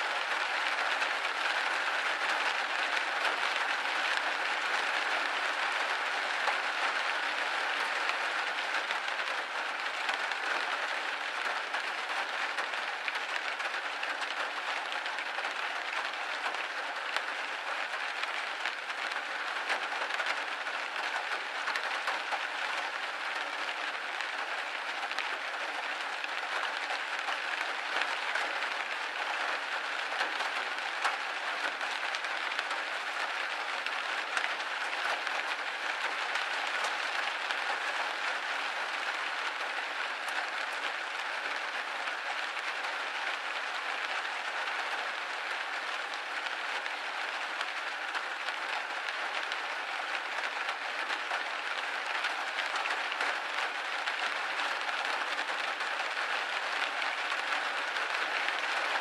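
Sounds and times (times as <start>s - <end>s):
rain on a window pane: 0.0s - 59.0s.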